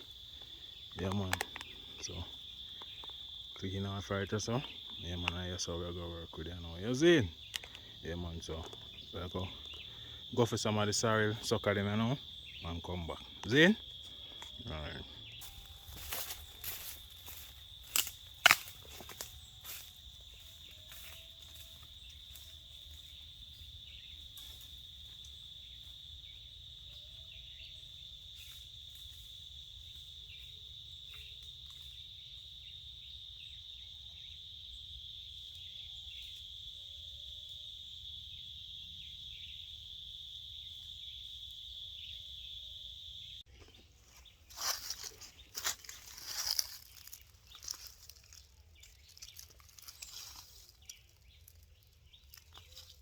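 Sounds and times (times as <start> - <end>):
soft chirps: 0.0 - 34.8
faint insect trill: 0.0 - 53.0
rustling and crunching: 15.3 - 25.4, 43.5 - 53.0.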